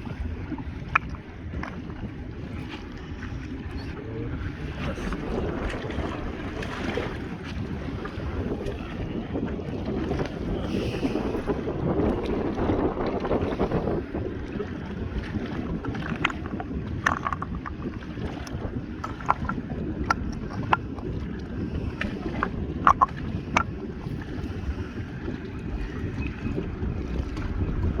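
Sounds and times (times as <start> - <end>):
wind buffeting microphone: 0.0 - 28.0.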